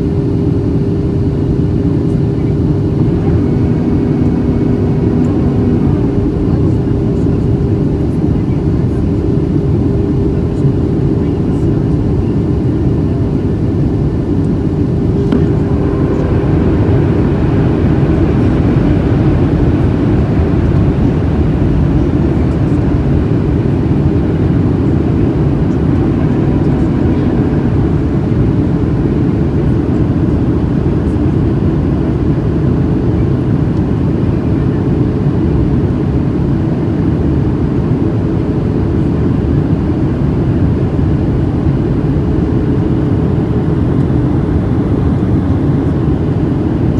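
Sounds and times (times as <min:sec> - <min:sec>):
constant hum: 0:00.0 - 0:46.9
jet engine drone in cabin: 0:00.0 - 0:46.9
rushing airflow: 0:14.6 - 0:29.0.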